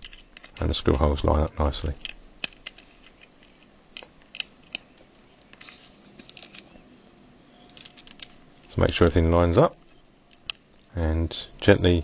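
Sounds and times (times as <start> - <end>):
light clicks of phone parts: 2.0 - 6.7.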